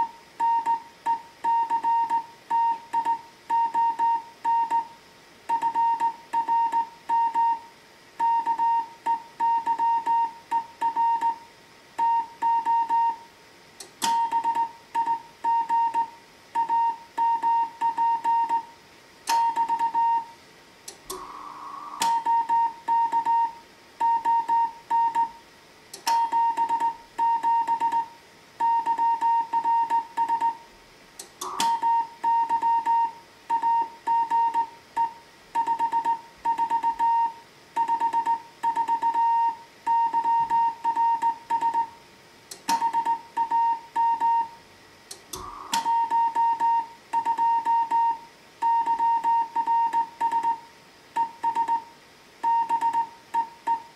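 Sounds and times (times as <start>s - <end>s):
sharp click: 13.8s - 14.4s, 22.0s - 22.3s, 25.9s - 26.9s, 31.2s - 31.9s, 42.5s - 43.0s, 45.1s - 46.0s
morse code tone: 31.4s - 41.9s, 45.4s - 50.6s.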